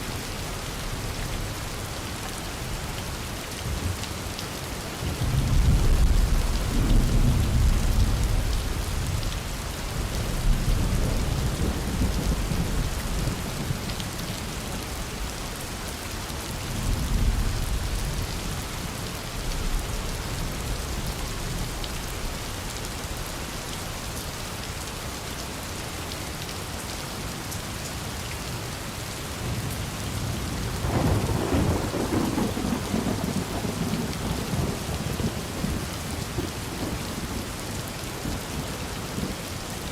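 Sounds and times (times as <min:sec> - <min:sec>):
steady rain falling: 0:00.0 - 0:39.9
rolling thunder: 0:05.2 - 0:09.2, 0:30.6 - 0:36.2.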